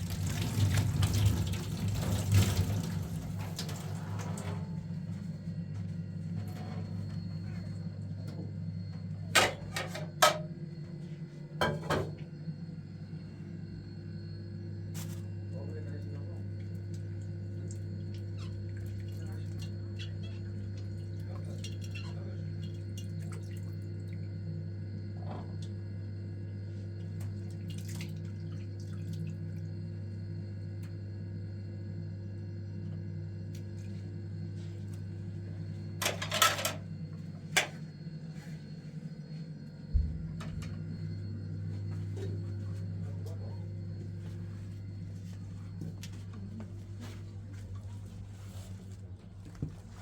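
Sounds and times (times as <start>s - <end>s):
water dripping: 0.0s - 3.9s
steady low hum: 0.0s - 50.0s.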